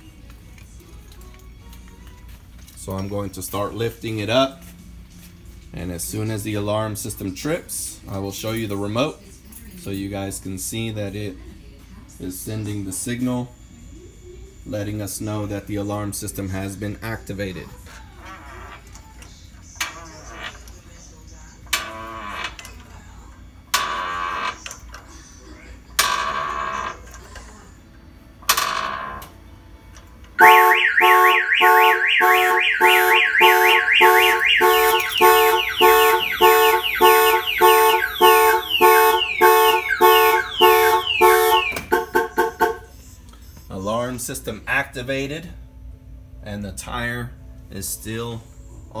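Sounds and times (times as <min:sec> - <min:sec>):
car alarm siren warbling: 0:30.4 - 0:42.9.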